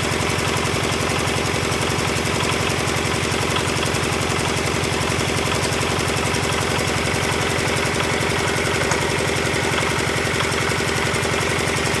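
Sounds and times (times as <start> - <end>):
machine engine pulsing: 3.2 - 12.0.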